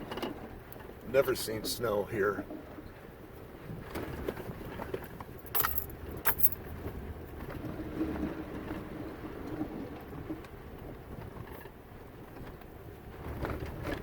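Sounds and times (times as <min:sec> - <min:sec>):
sharp rattles: 0:05.4 - 0:06.6.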